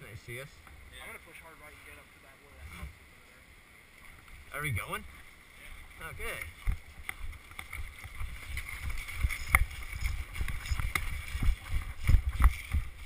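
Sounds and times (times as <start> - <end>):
footsteps: 5.7 - 13.0
gear jostling against camera: 6.5 - 13.0.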